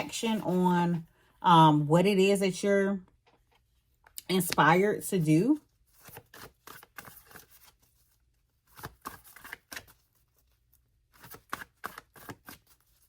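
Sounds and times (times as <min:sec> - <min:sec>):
cards shuffling: 0:05.9 - 0:10.5, 0:11.1 - 0:13.0.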